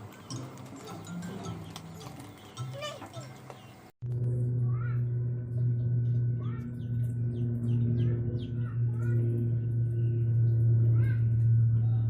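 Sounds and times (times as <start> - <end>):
small birds chirping: 0.0 - 3.9, 6.6 - 10.7
loud steady low hum: 4.0 - 12.0.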